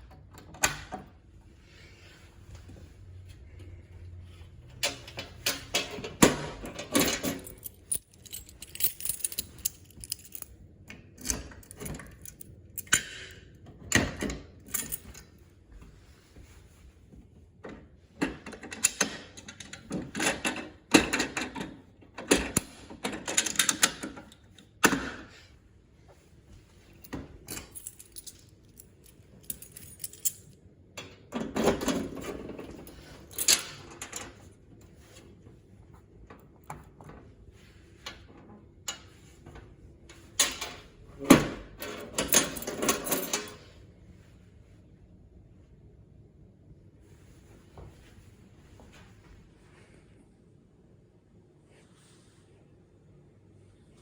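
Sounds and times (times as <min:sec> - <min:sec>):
metal objects jingling and rattling: 0:04.9 - 0:10.6, 0:11.2 - 0:13.0, 0:14.6 - 0:15.4, 0:26.9 - 0:30.6, 0:31.8 - 0:34.4, 0:41.8 - 0:43.7.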